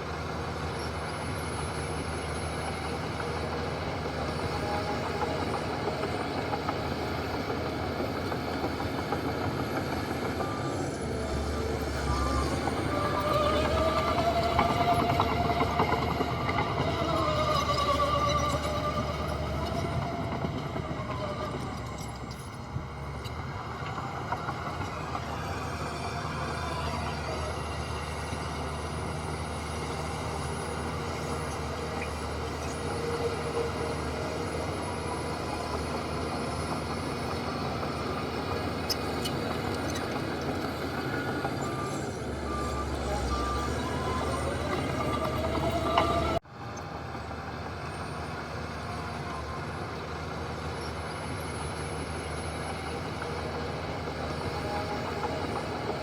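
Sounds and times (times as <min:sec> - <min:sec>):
heavy machinery engine running: 0:00.0 - 0:56.0
reversing alarm beeping: 0:08.5 - 0:39.5, 0:40.1 - 0:46.4.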